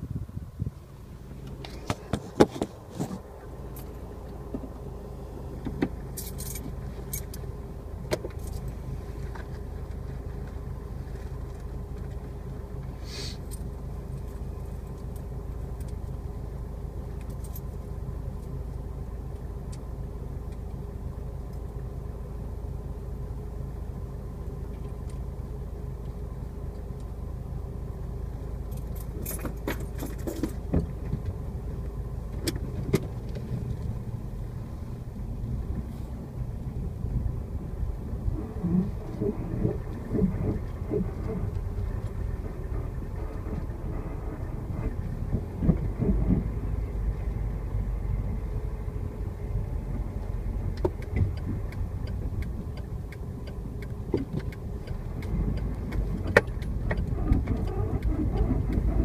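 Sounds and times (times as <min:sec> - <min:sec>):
car engine droning: 0:00.0 - 0:59.0
sharp clicks and jingling rattles: 0:05.6 - 0:07.5, 0:08.2 - 0:10.1, 0:17.1 - 0:18.6, 0:28.6 - 0:31.4.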